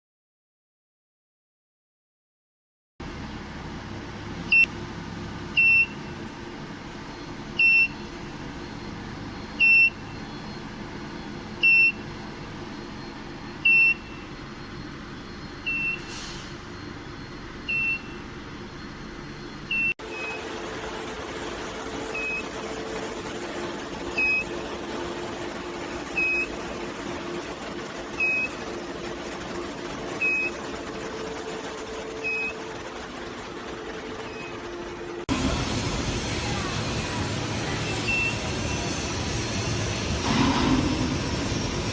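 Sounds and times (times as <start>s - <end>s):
short high beeps: 3.0s - 20.4s
steady machine hum: 3.0s - 41.9s.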